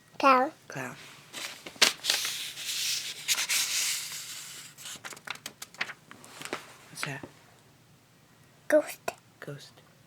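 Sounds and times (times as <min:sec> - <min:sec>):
book pages rustling and turning: 0:01.1 - 0:07.3.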